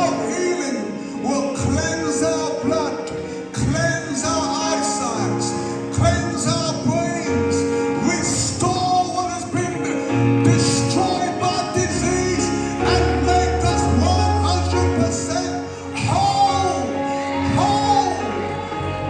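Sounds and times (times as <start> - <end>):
person singing: 0.0 - 19.0
held bass notes: 9.6 - 19.0.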